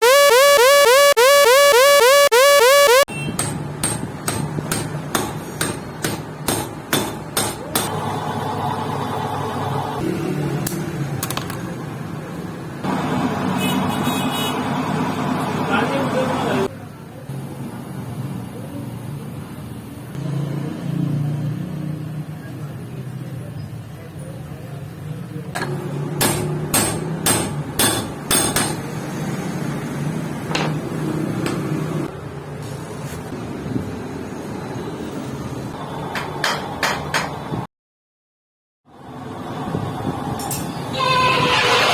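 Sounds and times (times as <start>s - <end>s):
workshop background: 0.0s - 37.7s, 38.9s - 41.9s
hammer striking metal: 3.3s - 8.0s, 25.6s - 29.0s, 30.5s - 31.8s, 36.2s - 37.4s
hammer blows: 25.6s - 29.0s.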